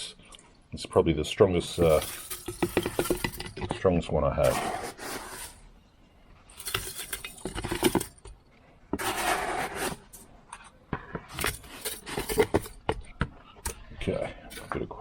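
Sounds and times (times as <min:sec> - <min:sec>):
metal keys clinking and jangling: 0:06.5 - 0:08.2.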